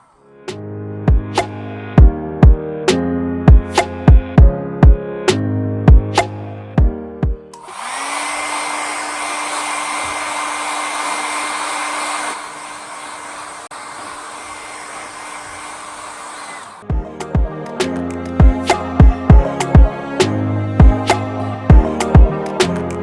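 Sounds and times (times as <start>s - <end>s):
hair dryer running: 7.6s - 17.0s.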